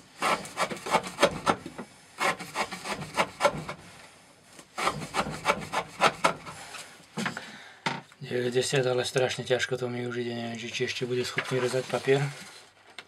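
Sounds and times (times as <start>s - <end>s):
knife sawing through rope: 0.1s - 1.4s, 2.2s - 3.7s, 4.8s - 6.4s.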